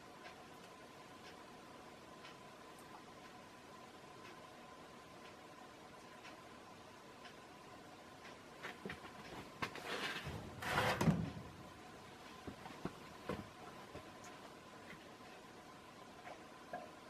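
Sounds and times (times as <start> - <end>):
light ticks: 0.0 - 7.6, 8.2 - 9.7
faint steady tone: 0.0 - 10.0, 11.4 - 17.0
ceiling fan running: 0.0 - 17.0.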